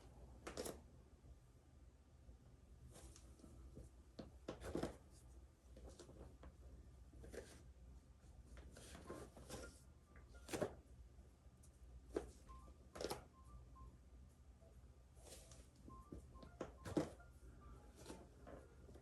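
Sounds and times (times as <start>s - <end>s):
faint low room hum: 0.0s - 19.0s.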